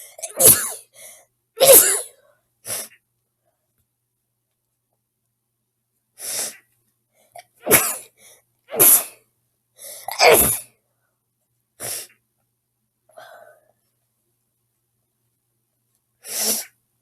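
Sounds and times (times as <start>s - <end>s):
girl sneezing: 0.2s - 0.9s, 1.6s - 2.9s, 7.6s - 8.1s, 8.7s - 9.2s, 10.1s - 10.6s.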